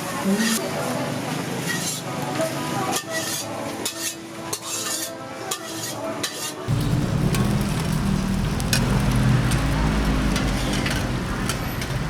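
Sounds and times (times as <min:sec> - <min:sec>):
food sizzling: 0:06.7 - 0:12.0.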